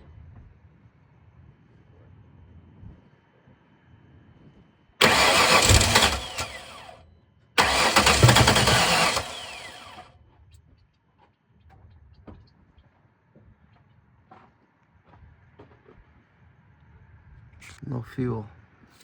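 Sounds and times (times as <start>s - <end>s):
starter cranking engine: 5.0s - 7.0s, 7.6s - 10.1s.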